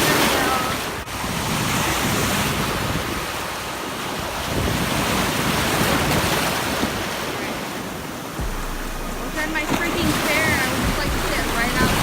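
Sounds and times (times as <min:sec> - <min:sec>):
ocean surf washing: 0:00.0 - 0:12.0
wind buffeting microphone: 0:00.0 - 0:12.0.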